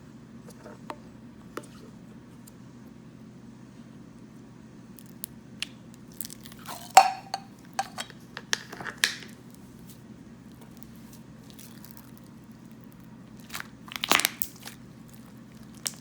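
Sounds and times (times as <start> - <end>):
slime popping and crackling: 13.4 - 16.0.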